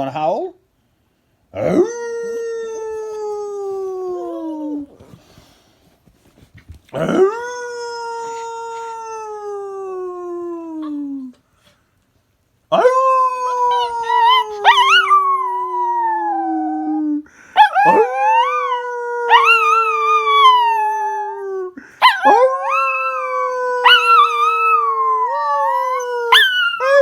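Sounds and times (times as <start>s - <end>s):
dog howling: 12.7s - 27.0s.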